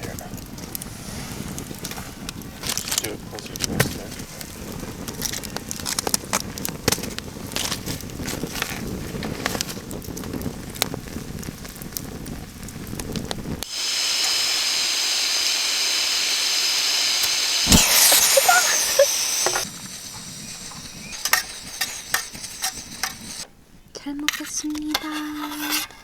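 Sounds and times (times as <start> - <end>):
campfire crackling and popping: 0.0 - 23.9
steady hiss: 0.0 - 23.9.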